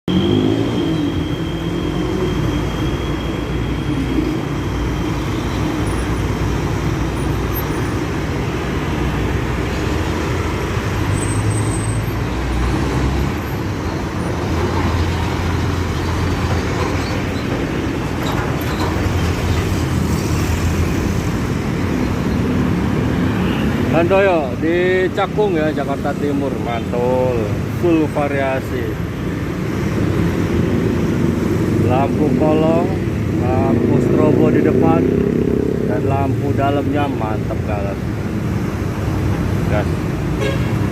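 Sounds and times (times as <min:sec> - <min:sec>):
road traffic noise: 0:00.0 - 0:40.9.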